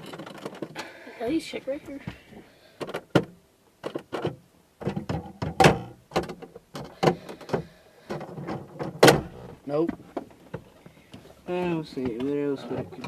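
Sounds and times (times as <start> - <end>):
sharp clicks and knocks: 2.8 - 11.2.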